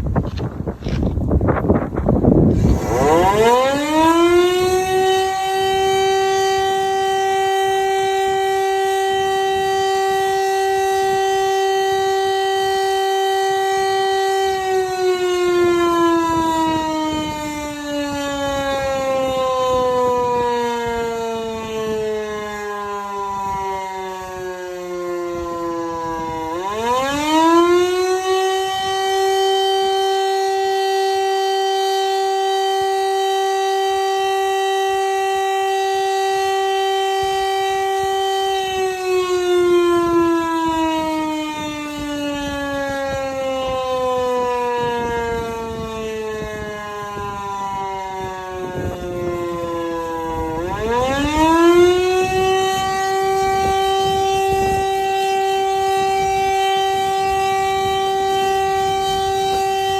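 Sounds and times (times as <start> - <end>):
siren bearing grinding: 2.4 - 14.3
electric motor siren winding: 2.4 - 59.9.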